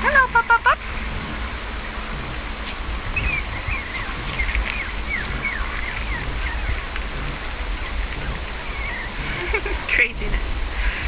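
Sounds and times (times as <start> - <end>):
steady low rumble: 0.0 - 11.0
puppies squeaking and yipping: 3.1 - 9.6.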